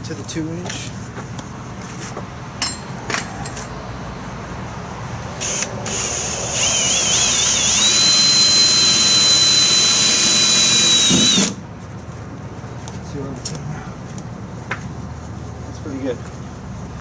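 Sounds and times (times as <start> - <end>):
power drill whining into metal: 5.4 - 11.6.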